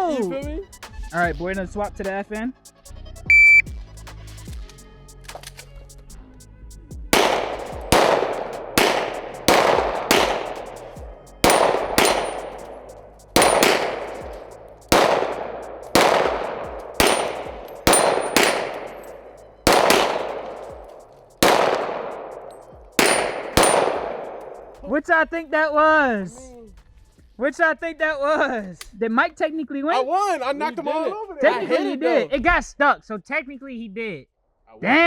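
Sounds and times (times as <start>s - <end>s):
bullets pinging steel plates: 7.2s - 24.9s
handgun shots: 7.2s - 24.9s.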